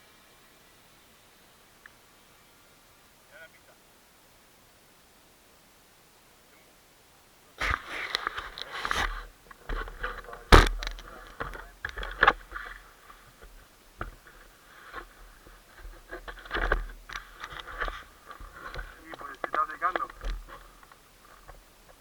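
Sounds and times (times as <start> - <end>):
scraping and rustling: 7.6 - 22.0
sharp knock: 10.5 - 11.0.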